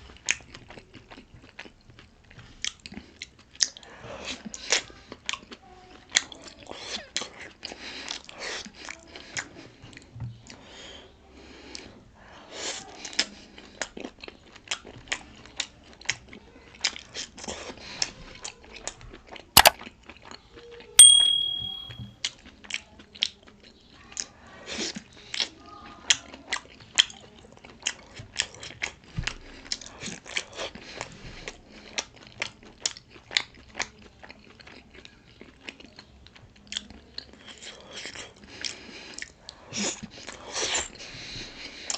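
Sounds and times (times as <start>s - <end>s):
ringing clink: 21.0s - 22.0s
sharp click: 21.0s - 22.0s.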